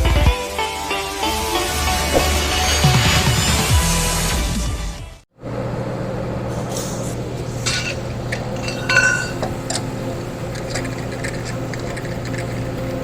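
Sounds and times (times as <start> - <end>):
metal tools clinking: 7.6 - 12.7.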